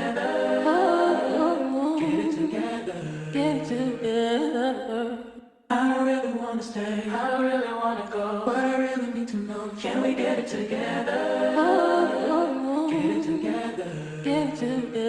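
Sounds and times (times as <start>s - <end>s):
layered singing voices: 0.0s - 15.0s.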